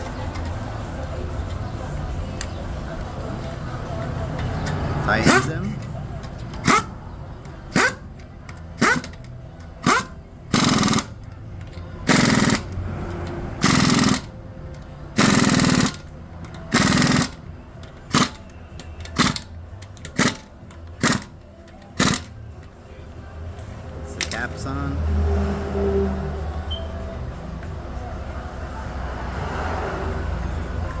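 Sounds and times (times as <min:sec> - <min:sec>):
impact wrench bursts: 0:03.5 - 0:22.4.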